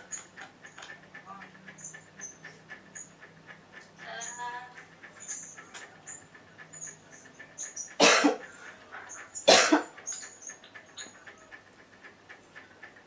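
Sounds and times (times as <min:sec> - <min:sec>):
man coughing: 0:08.0 - 0:08.4, 0:09.5 - 0:09.9.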